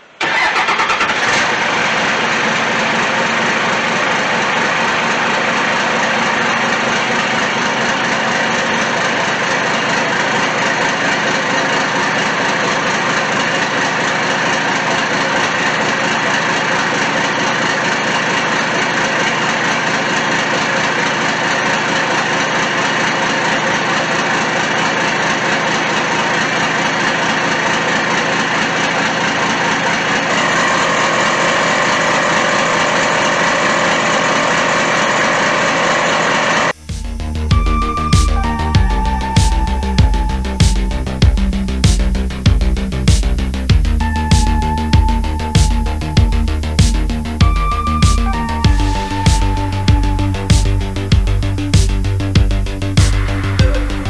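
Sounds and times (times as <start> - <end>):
electric air compressor running: 30.3 - 54.0.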